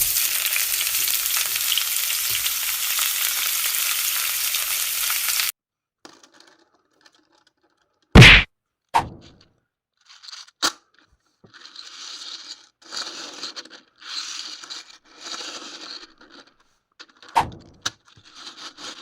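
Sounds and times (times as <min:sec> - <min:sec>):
frying sizzle: 0:00.0 - 0:05.5
loud sharp knock: 0:08.2 - 0:09.3.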